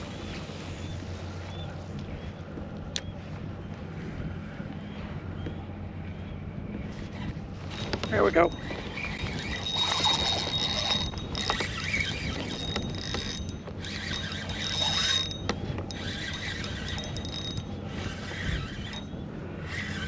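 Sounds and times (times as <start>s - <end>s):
fishing reel being cranked: 7.6s - 20.0s.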